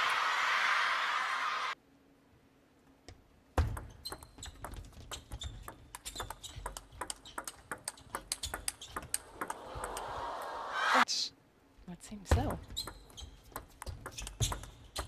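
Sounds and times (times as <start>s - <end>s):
table tennis ball clicking: 3.7s - 10.1s.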